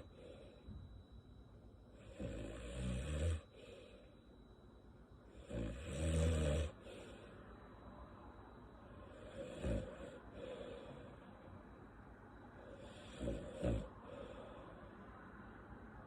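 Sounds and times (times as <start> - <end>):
quiet breathing: 0.0 - 16.0
woman snoring: 2.0 - 3.9, 5.4 - 7.2, 9.0 - 11.2, 12.6 - 14.7.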